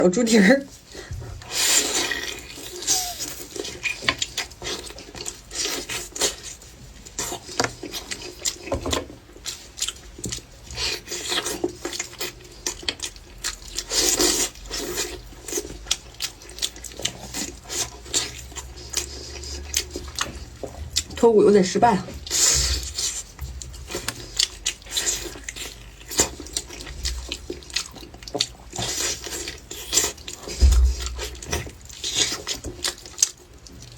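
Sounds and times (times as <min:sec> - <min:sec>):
person chewing and smacking: 0:00.8 - 0:21.2, 0:22.2 - 0:33.9.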